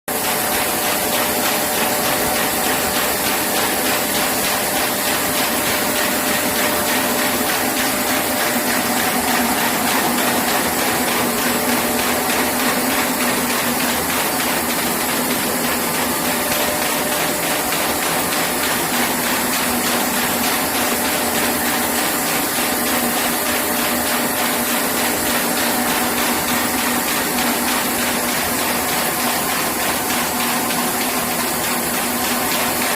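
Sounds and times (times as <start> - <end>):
folding machine hum: 0.1 - 32.9.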